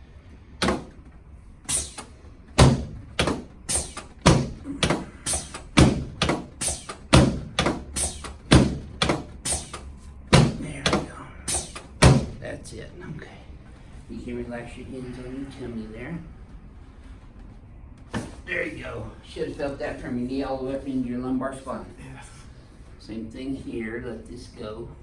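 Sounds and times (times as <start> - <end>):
sharp thumps of chiropractic work: 0.6 - 12.5, 18.1 - 18.5.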